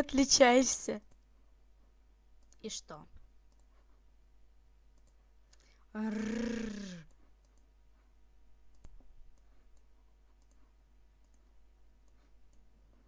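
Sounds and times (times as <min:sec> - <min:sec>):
voice trailing off: 0:06.0 - 0:07.1.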